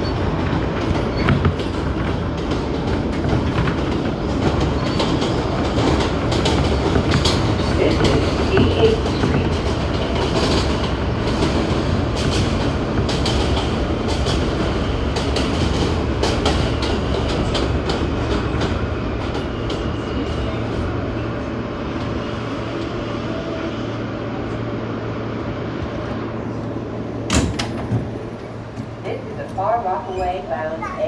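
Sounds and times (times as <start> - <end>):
train wheels clacking over rail joints: 0.0 - 20.0
low hum of subway car: 0.0 - 31.0
train rumble: 0.0 - 31.0.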